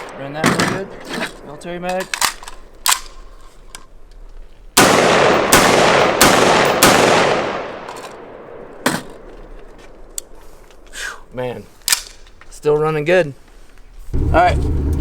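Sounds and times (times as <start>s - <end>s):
rifle rapid fire: 4.8s - 7.9s.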